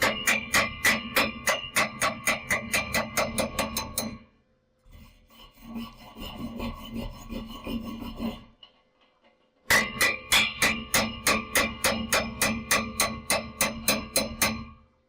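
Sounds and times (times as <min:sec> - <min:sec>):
wire brush scrubbing steel: 0:04.9 - 0:08.6.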